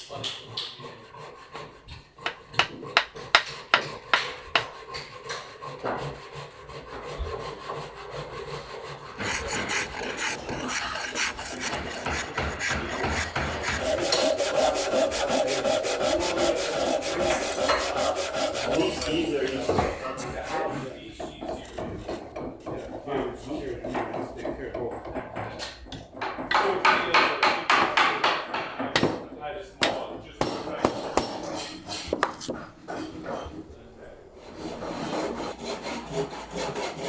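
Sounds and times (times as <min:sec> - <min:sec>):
rasping strokes on wood: 0:00.2 - 0:24.6, 0:29.8 - 0:33.4, 0:34.4 - 0:37.0
sharp taps on wood: 0:02.3 - 0:04.7.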